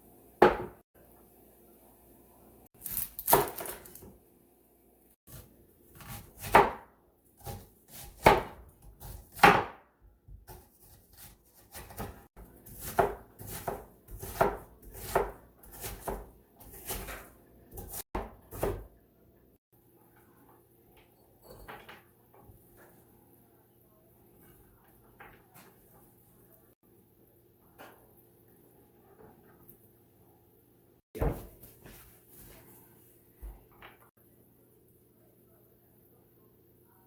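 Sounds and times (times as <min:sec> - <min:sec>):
knife chopping onion: 0:05.3 - 0:18.9.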